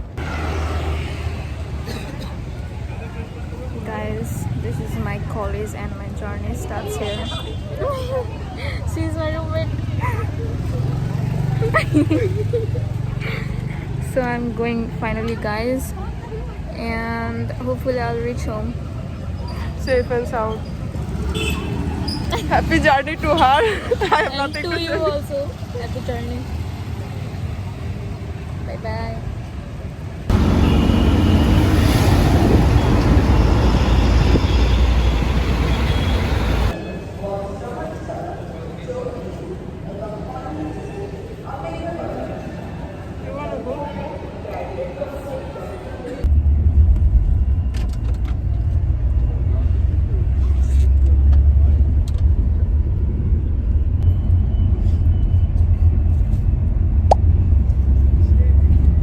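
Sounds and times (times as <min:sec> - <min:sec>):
train rumbling: 0:30.3 - 0:36.8.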